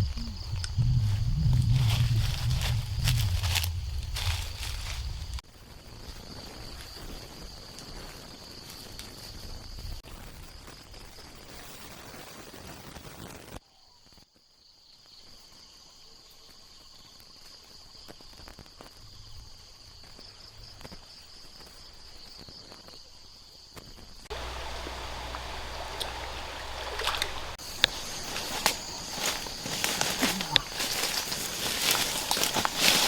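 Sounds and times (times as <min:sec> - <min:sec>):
insects buzzing: 0:00.0 - 0:05.4, 0:18.9 - 0:33.0
sharp crackles: 0:00.0 - 0:05.4, 0:24.3 - 0:33.0.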